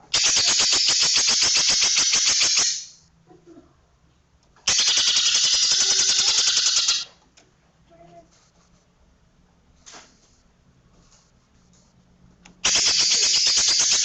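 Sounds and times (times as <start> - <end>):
bird song rapid high notes: 0.1 - 3.0, 4.7 - 7.1, 12.6 - 14.0.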